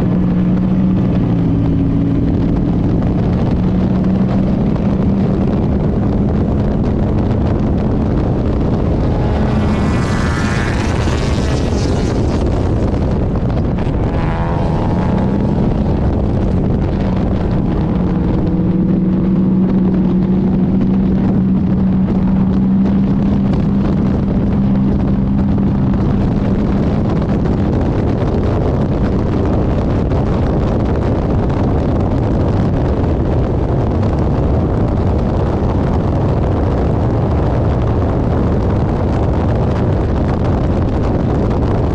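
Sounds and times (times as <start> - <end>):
race car engine running hard: 0.0 - 41.9
wind noise on microphone: 0.0 - 41.9.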